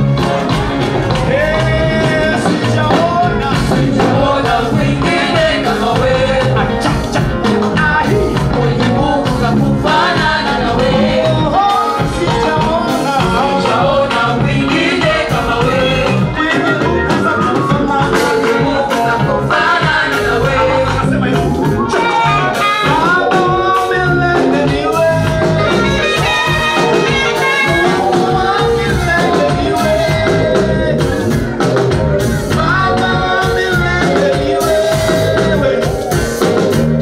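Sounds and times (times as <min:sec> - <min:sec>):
instrumental backing with steady beat: 0:00.0 - 0:37.0
voices singing praise song: 0:00.0 - 0:37.0.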